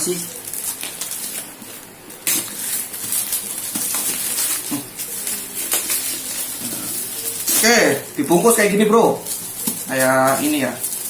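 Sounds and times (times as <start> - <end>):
packaging rustling and scraping: 0.0 - 11.0
sharp crack of packaging: 0.3 - 8.2.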